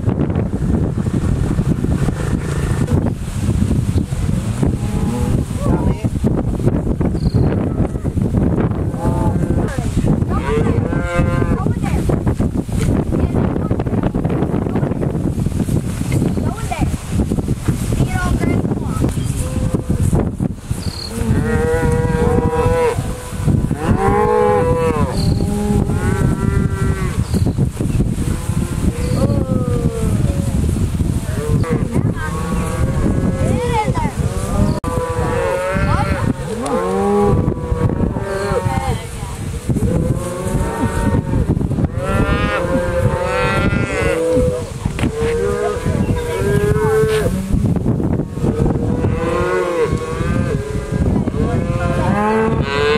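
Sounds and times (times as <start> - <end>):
cattle mooing: 21.1 - 27.2, 31.3 - 39.1, 39.8 - 47.6, 48.3 - 52.9.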